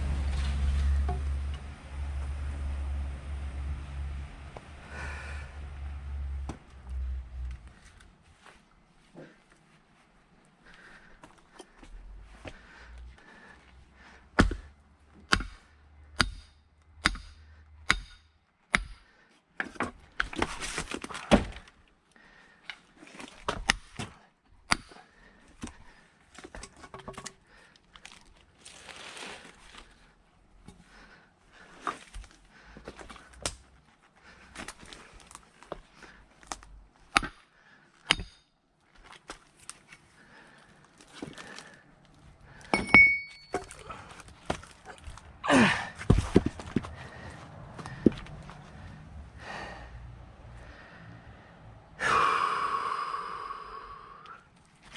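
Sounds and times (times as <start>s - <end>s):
axe strikes on firewood: 14.4s - 14.7s, 15.3s - 15.6s, 16.2s - 19.1s, 37.1s - 37.4s, 38.0s - 38.4s
wood cracking and tearing: 20.1s - 21.9s, 27.5s - 30.1s, 33.2s - 37.2s, 43.6s - 48.2s.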